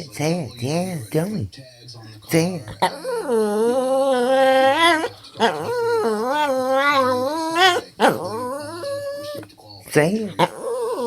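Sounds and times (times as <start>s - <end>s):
dog whining howls: 2.8s - 9.4s, 10.4s - 11.0s.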